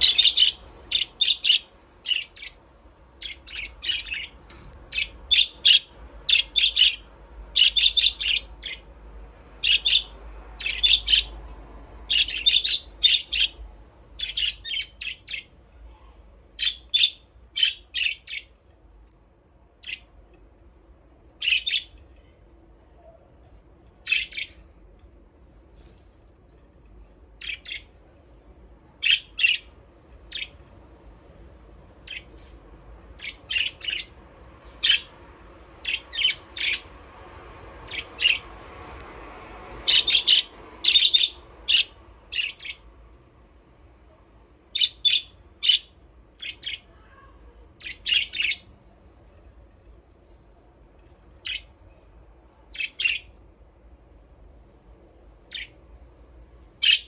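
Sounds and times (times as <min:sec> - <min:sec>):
budgerigars chirping: 0:00.0 - 0:02.6, 0:03.2 - 0:08.8, 0:09.6 - 0:11.4, 0:12.1 - 0:13.6, 0:16.6 - 0:18.5, 0:21.4 - 0:21.9, 0:24.0 - 0:24.6, 0:29.0 - 0:29.7, 0:33.1 - 0:35.1, 0:35.8 - 0:36.9, 0:37.9 - 0:38.5, 0:39.8 - 0:42.8, 0:44.8 - 0:46.8, 0:47.8 - 0:48.6, 0:52.8 - 0:53.3
faint low hum: 0:00.0 - 0:57.0.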